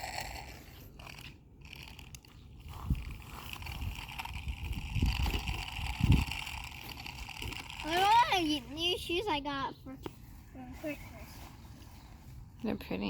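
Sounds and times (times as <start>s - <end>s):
toy car electric motor whining: 0.0s - 9.4s.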